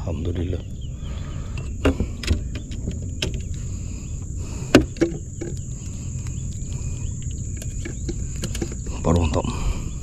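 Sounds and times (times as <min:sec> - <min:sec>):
high-pitched insect drone: 0:00.6 - 0:10.0
sharp knocks and clicks: 0:01.6 - 0:03.6, 0:04.7 - 0:05.7, 0:07.2 - 0:09.4.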